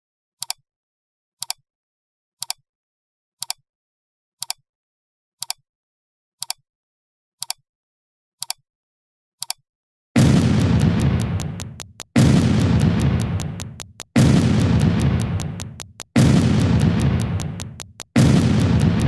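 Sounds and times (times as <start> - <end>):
sharp dry double click: 10.2 - 19.0.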